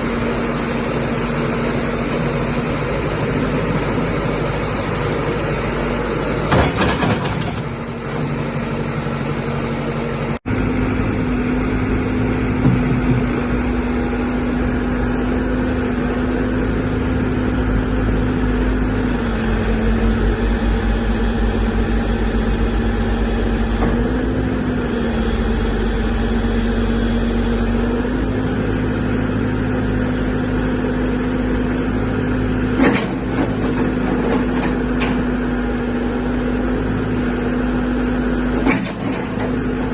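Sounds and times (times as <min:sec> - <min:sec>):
diesel engine running: 0:00.0 - 0:39.9
short knocks: 0:12.6 - 0:13.5.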